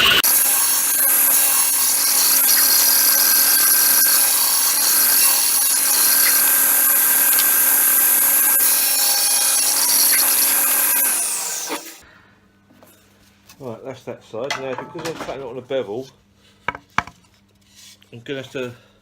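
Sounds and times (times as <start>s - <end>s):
table saw whining: 0.0s - 12.0s.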